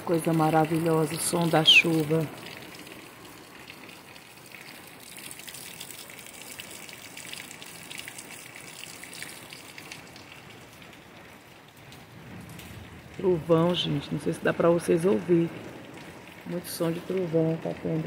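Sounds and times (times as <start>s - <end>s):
heavy rain falling: 0.0s - 18.0s.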